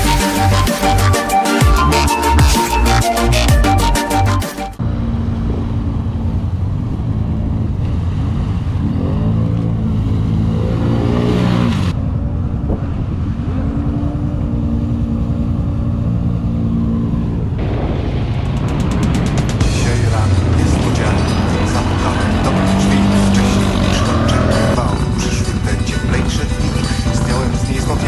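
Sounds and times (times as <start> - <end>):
quad bike engine revving: 4.8 - 17.6, 18.7 - 28.0.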